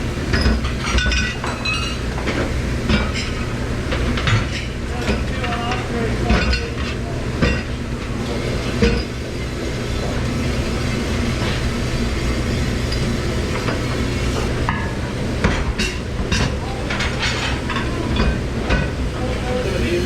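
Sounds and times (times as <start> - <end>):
low hum of kitchen machinery: 0.0 - 20.0
dishes clinking and clattering: 0.3 - 10.2, 12.9 - 20.0.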